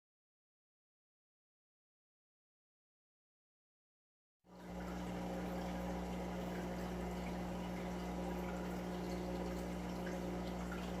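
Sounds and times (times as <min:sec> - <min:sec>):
steady low hum: 0:04.5 - 0:11.0
water trickling and bubbling: 0:04.5 - 0:11.0.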